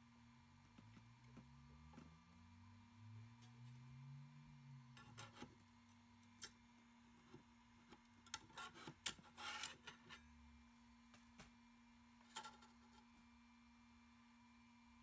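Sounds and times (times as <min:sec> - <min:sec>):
sharp clicks and scrapes: 0:07.9 - 0:10.2.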